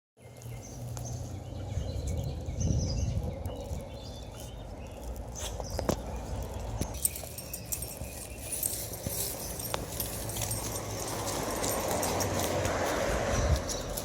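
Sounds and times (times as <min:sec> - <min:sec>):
low rumble on microphone: 0:01.0 - 0:06.9.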